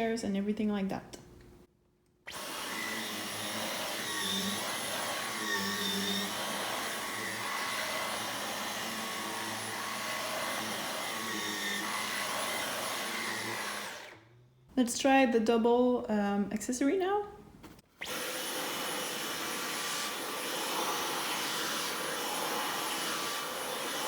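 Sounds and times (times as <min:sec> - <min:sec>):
cordless vacuum running: 0:02.3 - 0:14.2, 0:18.0 - 0:24.0.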